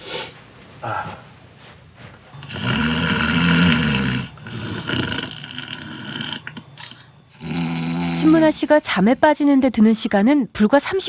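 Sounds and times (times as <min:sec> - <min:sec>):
man snoring: 0:02.4 - 0:08.4.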